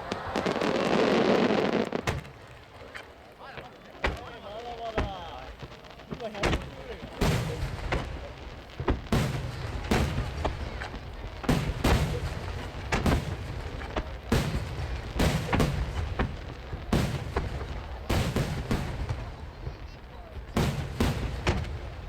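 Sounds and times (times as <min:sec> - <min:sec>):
firework shells bursting: 0:00.0 - 0:22.0.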